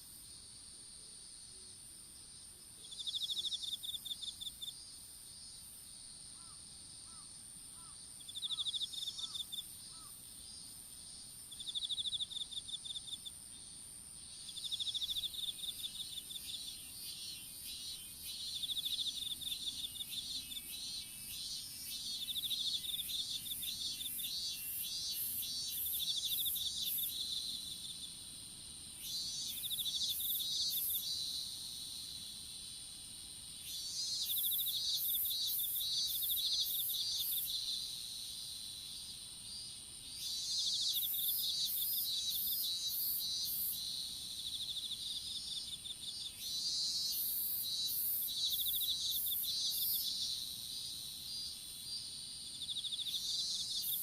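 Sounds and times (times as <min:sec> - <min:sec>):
fast pulsed insect chirping: 0:01.3 - 0:54.0
high-pitched insect trill: 0:02.8 - 0:54.0.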